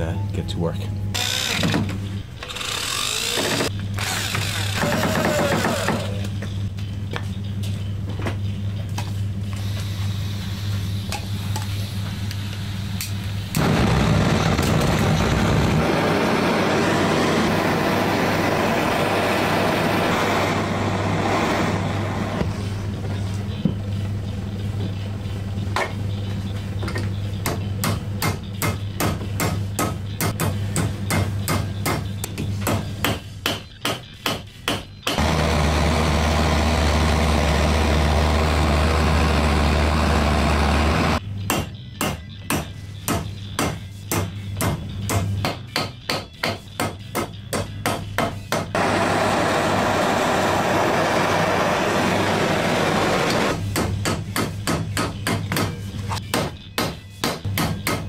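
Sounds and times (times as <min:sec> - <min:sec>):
hammer striking steel: 0:53.6 - 0:58.0.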